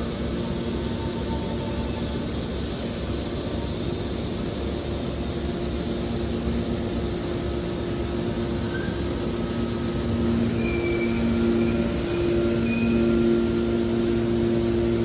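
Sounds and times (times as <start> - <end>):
baling machine humming: 6.6 - 15.0
faint short high squeaks: 8.6 - 9.6, 10.4 - 14.0.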